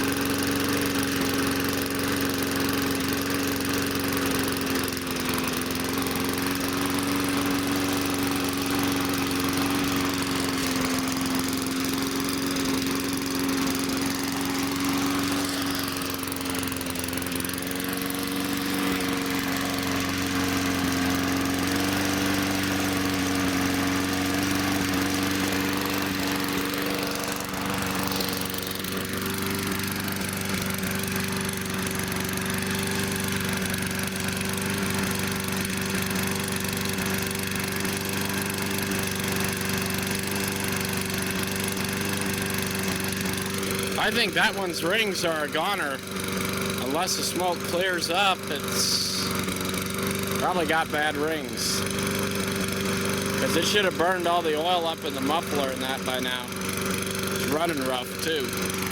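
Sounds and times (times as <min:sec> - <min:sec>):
small gasoline engine running: 0:00.0 - 0:58.9.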